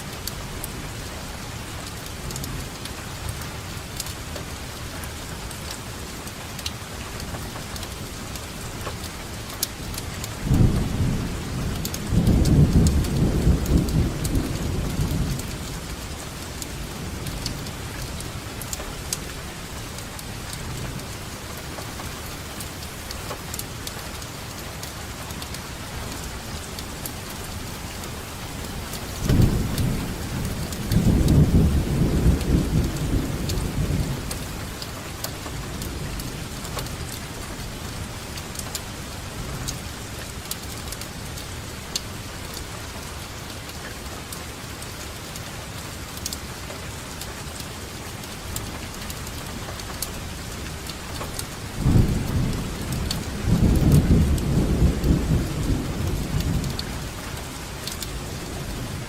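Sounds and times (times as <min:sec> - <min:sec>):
steady rainfall: 0:00.0 - 0:59.0
raindrop ticks: 0:00.1 - 0:59.0
thunder rumbling: 0:25.0 - 0:34.8, 0:51.6 - 0:59.0.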